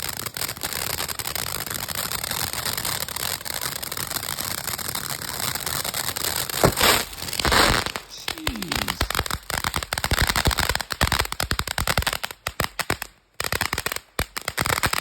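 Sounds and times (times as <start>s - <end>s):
firework fountain hissing and crackling: 0.0s - 15.0s
firework bang: 6.5s - 9.4s.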